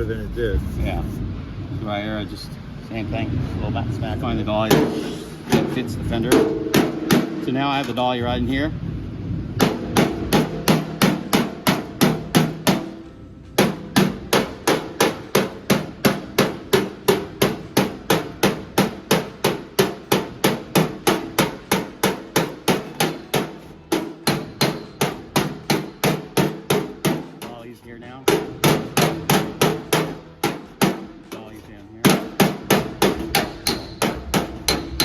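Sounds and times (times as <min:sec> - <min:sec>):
hammer ringing on steel fender: 0:09.6 - 0:27.6, 0:32.0 - 0:35.0.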